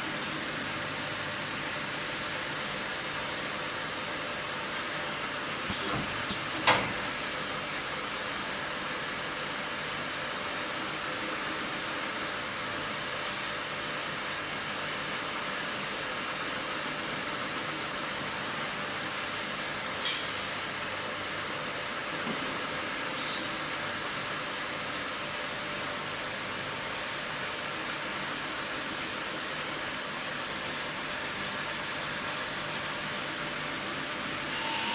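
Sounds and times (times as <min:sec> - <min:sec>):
machine whirring hiss: 0:04.8 - 0:07.4.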